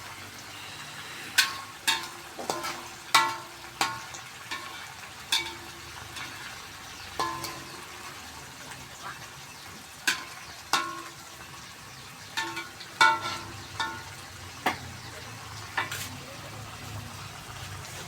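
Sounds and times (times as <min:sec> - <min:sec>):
sauce sizzling in a frying pan: 0:00.0 - 0:18.0
spatula clinking against pan: 0:01.3 - 0:08.4, 0:10.0 - 0:15.0.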